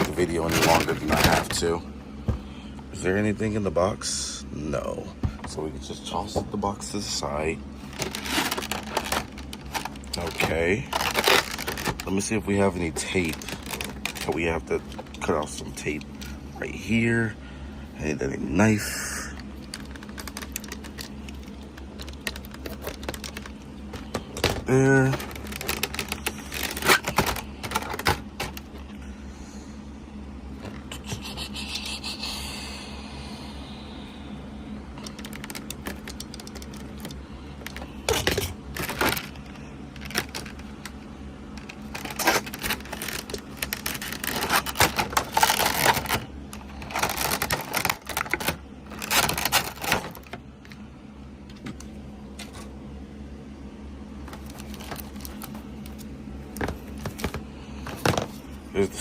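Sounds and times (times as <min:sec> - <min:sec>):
packaging rustling: 0:00.0 - 0:01.7, 0:07.8 - 0:16.4, 0:19.4 - 0:29.0, 0:35.0 - 0:50.8, 0:54.2 - 0:58.6.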